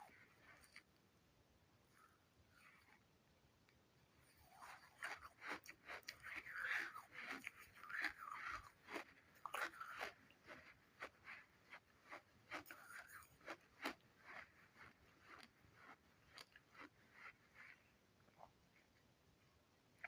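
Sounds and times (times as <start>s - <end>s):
person chewing crunchy sand: 4.2s - 18.6s.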